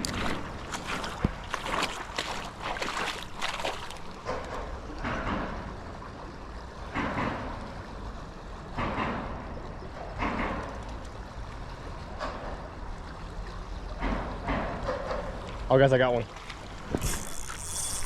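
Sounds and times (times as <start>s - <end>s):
water splashing rushes: 0.0s - 4.8s
creek water running: 0.0s - 5.1s, 15.3s - 18.0s.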